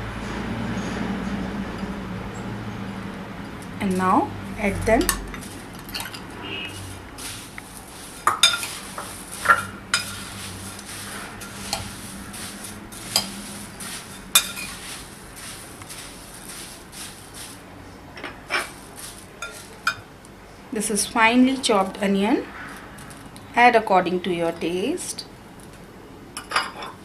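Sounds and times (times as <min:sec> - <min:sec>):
spoon clinking against bowl: 0:05.0 - 0:06.2, 0:08.2 - 0:12.5, 0:13.1 - 0:16.0, 0:19.4 - 0:20.0
dry rustle of mixing puffed rice: 0:05.0 - 0:17.8, 0:18.5 - 0:20.0.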